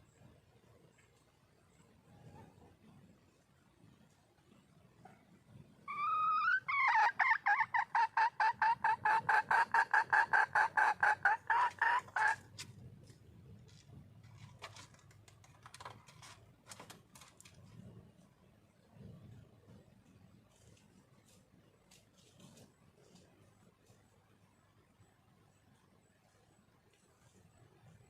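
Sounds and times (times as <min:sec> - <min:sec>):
junglefowl hen cackling call: 0:05.9 - 0:12.5.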